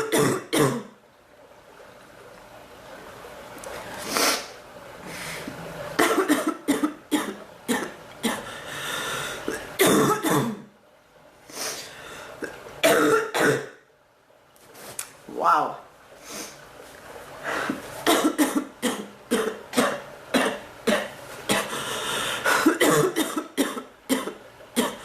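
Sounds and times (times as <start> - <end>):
woman coughing: 0.0 - 0.9, 6.0 - 8.4, 9.8 - 10.6, 12.8 - 13.8, 18.1 - 21.7, 22.5 - 25.0.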